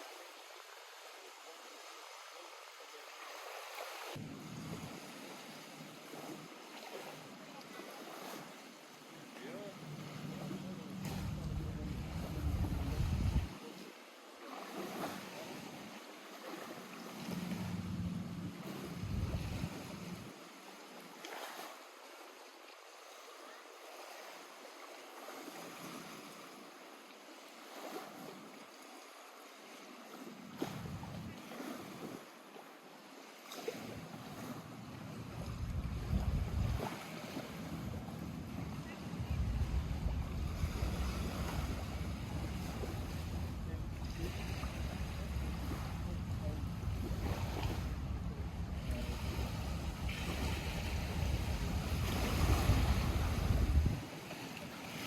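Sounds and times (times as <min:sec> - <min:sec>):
water lapping at shore: 0:00.0 - 0:55.0
wind rumble on microphone: 0:10.0 - 0:13.6, 0:17.2 - 0:20.3, 0:30.6 - 0:32.2, 0:34.4 - 0:54.1.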